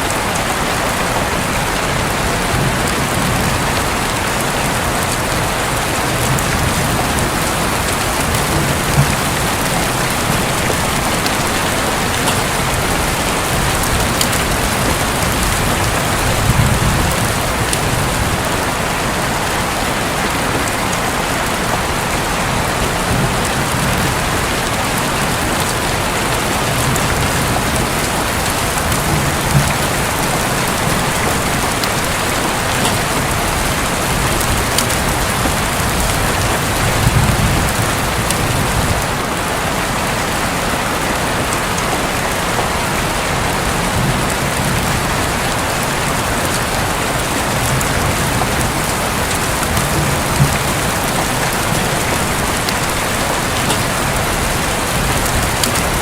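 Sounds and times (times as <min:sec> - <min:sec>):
heavy rain drumming on roof: 0:00.0 - 0:56.0
distant thunder rumble: 0:01.3 - 0:20.9, 0:21.5 - 0:39.3, 0:43.1 - 0:56.0.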